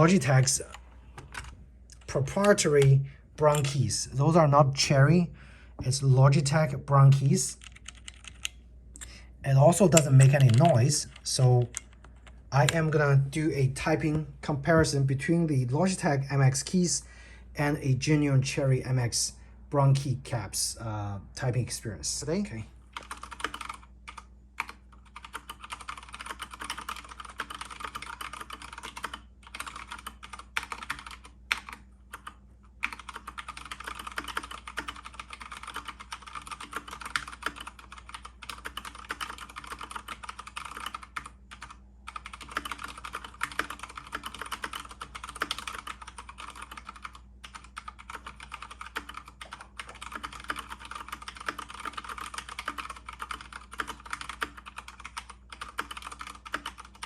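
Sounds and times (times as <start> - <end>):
typing on mechanical keyboard: 7.1 - 8.6, 9.7 - 12.8, 23.0 - 57.0.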